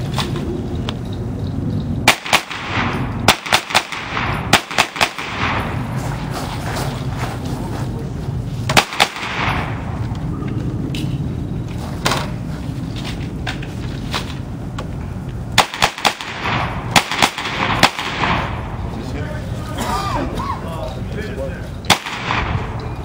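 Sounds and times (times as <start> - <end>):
gunshots with ringing tail: 2.0 - 6.0, 8.7 - 10.0, 15.6 - 18.9, 21.9 - 22.8.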